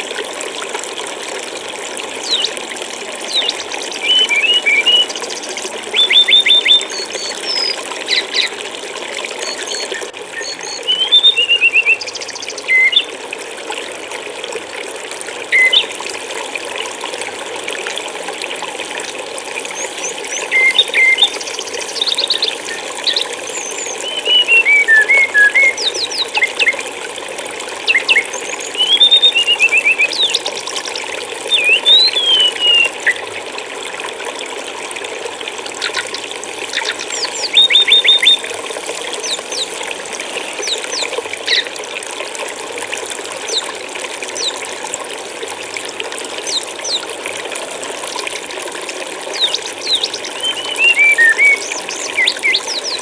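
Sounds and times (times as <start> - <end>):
stream water trickling: 0.0 - 53.0
songbird chirps and trills: 2.2 - 2.6, 3.3 - 8.6, 9.4 - 13.1, 19.8 - 26.8, 27.9 - 33.2, 35.8 - 38.5, 49.3 - 53.0.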